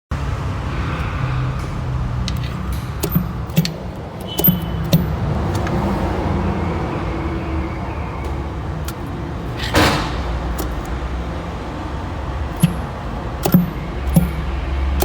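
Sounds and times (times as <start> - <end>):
car engine rumbling: 0.2 - 15.0
sharp clicks: 2.3 - 5.9, 10.5 - 11.0, 12.5 - 15.0.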